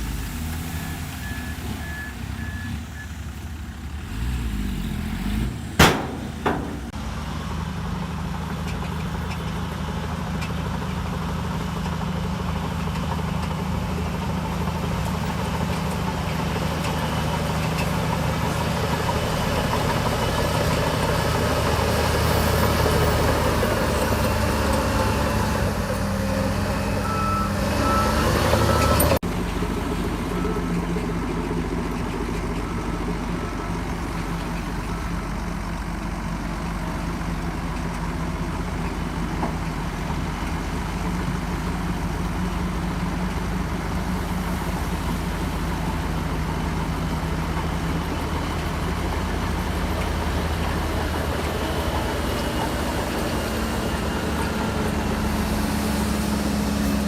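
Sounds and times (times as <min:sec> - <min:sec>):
heavy diesel engine under load: 0:00.0 - 0:57.0
sharp knocks: 0:05.8 - 0:07.0
reversing alarm beeping: 0:26.4 - 0:29.2.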